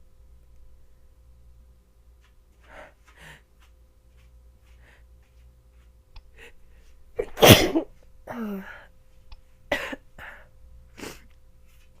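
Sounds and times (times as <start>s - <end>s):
woman sneezing: 7.2s - 8.4s.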